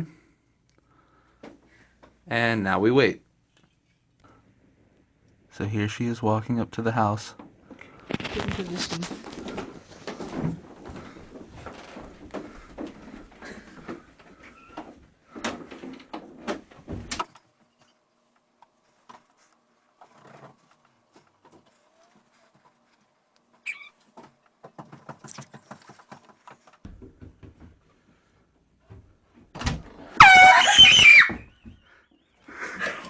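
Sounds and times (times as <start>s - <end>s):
shuffling: 7.7s - 15.4s
quiet knocks: 26.8s - 27.9s.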